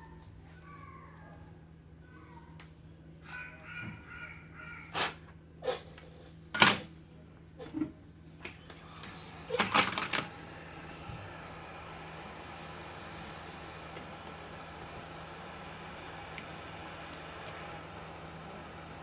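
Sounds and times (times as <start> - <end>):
faint steady hiss: 8.4 - 19.0.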